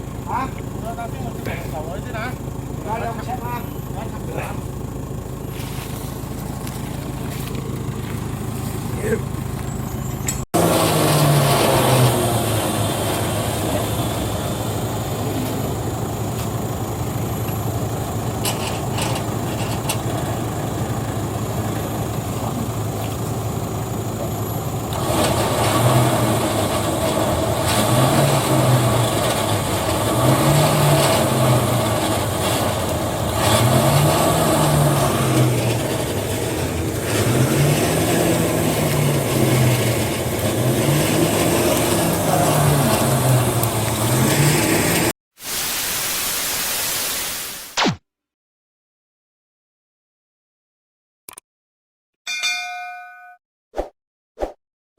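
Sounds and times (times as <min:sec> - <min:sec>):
engine revving up and down: 0:10.6 - 0:15.8, 0:24.9 - 0:45.2.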